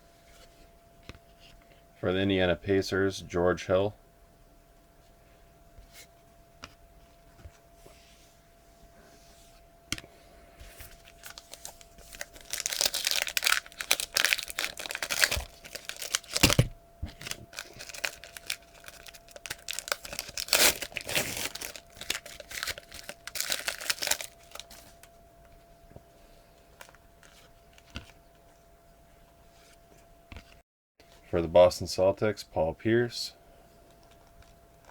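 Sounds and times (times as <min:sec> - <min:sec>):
wrapper tearing and crinkling: 0:11.0 - 0:25.1.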